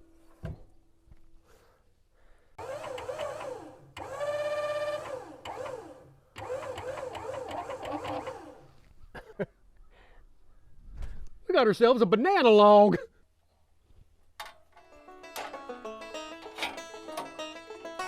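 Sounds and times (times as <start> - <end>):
band sawmill cutting log: 2.6 - 8.8.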